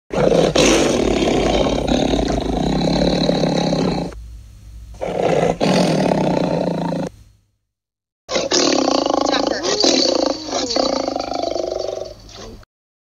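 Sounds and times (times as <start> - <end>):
dinosaur roar: 0.1 - 4.2, 5.0 - 7.1, 8.3 - 12.5.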